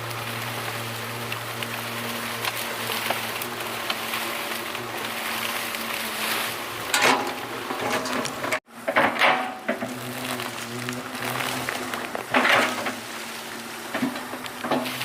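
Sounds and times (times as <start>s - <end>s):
diesel engine running: 0.0s - 8.6s.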